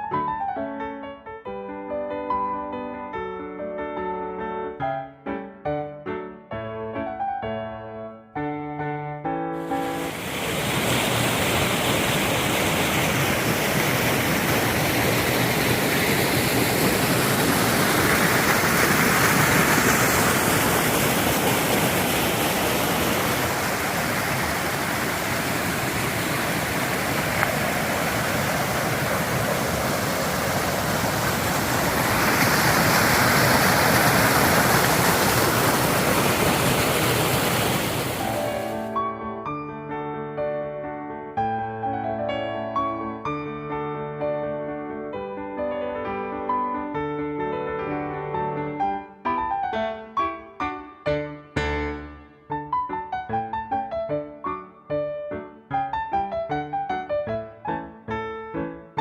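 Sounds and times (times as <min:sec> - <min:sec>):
stream rushing over rocks: 0:09.6 - 0:38.9.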